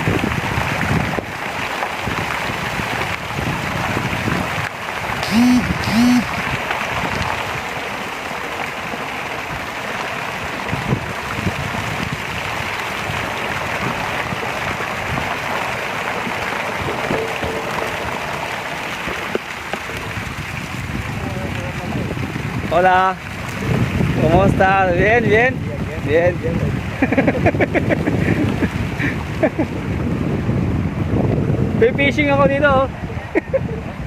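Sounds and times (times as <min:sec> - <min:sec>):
running water rushing: 0:00.0 - 0:30.2
short squeaky tones: 0:05.2 - 0:06.3.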